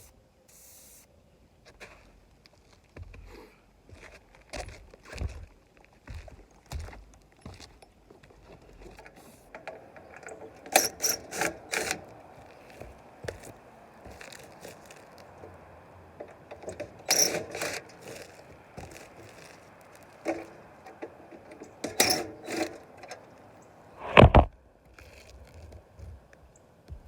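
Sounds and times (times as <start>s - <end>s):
spray can hissing: 0.5s - 1.0s
loud thump: 24.0s - 24.5s.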